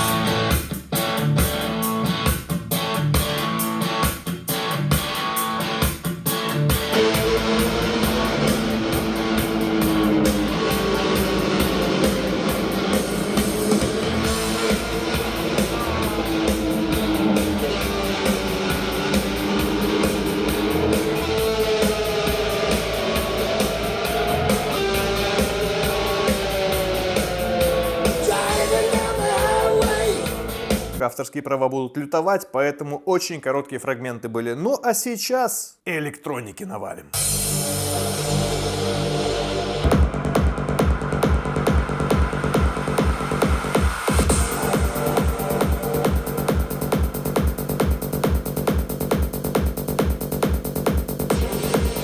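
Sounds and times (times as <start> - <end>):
jazz guitar over bass: 0.0 - 31.0.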